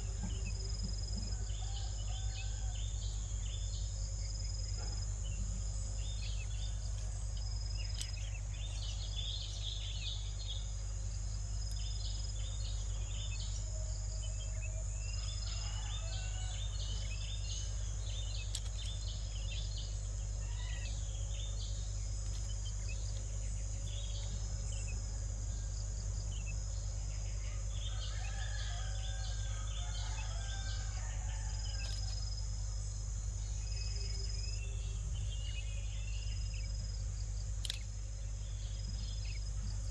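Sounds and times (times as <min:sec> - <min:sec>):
low hum: 0:00.0 - 0:27.9
crickets droning: 0:00.0 - 0:39.9
bird chirps and calls: 0:15.2 - 0:21.6.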